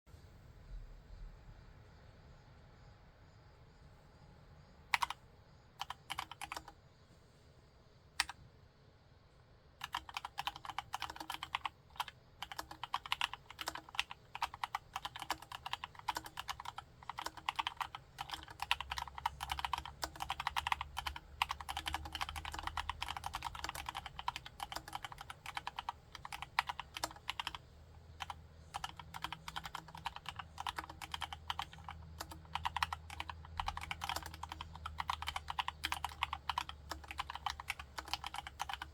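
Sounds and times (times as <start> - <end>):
mechanical keyboard typing: 4.9 - 5.2, 5.8 - 6.7, 9.8 - 38.9.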